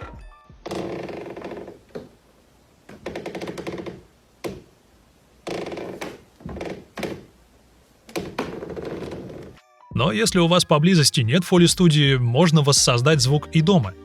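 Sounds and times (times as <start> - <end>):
wooden floorboard creaking: 0.6 - 2.2, 2.9 - 4.7, 5.4 - 7.4, 8.0 - 9.6.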